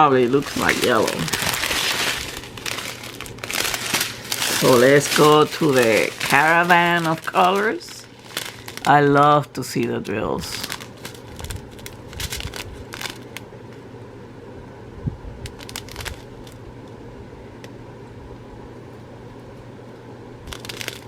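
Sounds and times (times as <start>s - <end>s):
plastic bags crinkling: 0.0s - 13.4s, 15.5s - 16.6s, 20.5s - 21.0s
low background hum: 0.0s - 21.0s.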